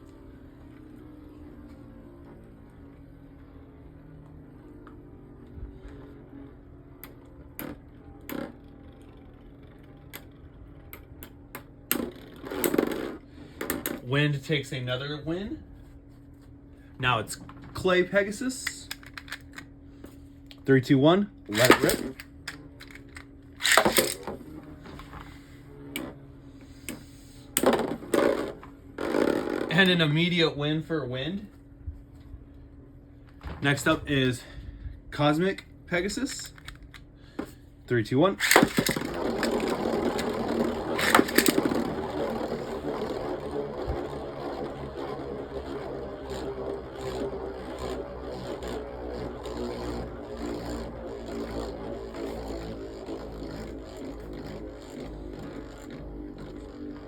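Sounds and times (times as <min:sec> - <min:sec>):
spinning top launcher rip: 0:11.9 - 0:14.0, 0:21.5 - 0:24.5, 0:38.4 - 0:57.0
spinning tops whirring: 0:17.9 - 0:19.8, 0:21.5 - 0:24.4, 0:35.2 - 0:37.0, 0:38.3 - 0:57.0
spinning tops clashing rattle: 0:21.5 - 0:24.2, 0:38.4 - 0:42.6.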